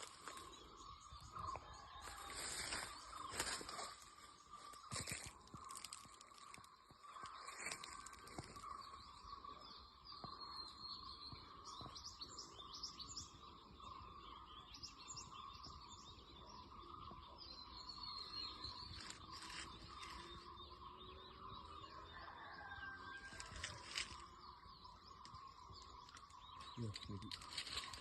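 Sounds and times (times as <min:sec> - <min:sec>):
small birds chirping: 0:00.0 - 0:28.0.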